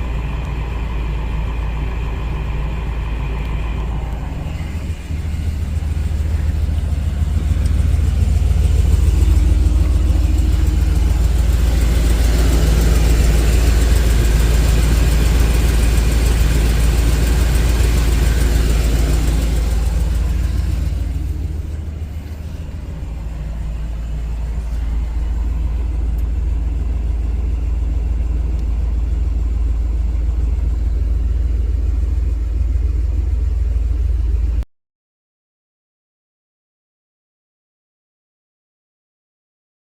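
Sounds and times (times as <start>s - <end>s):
motorhome engine rumbling: 0.0s - 34.6s.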